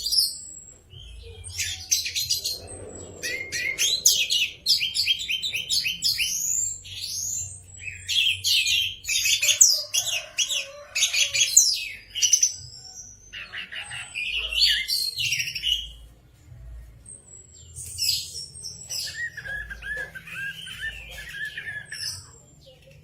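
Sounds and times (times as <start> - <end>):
thrush singing: 0.7 - 12.4.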